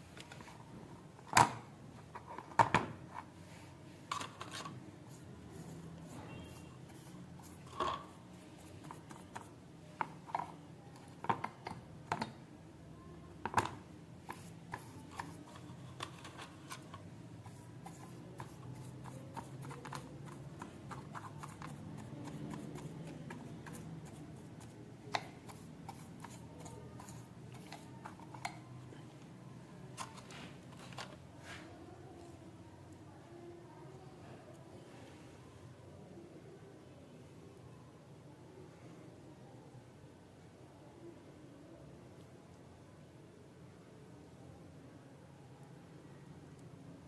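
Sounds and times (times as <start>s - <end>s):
clicks and taps of small objects: 8.8s - 12.4s.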